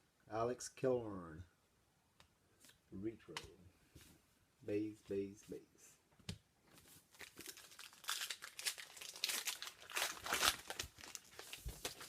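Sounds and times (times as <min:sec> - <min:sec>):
plastic wrapper crinkling and tearing: 0:07.1 - 0:12.0.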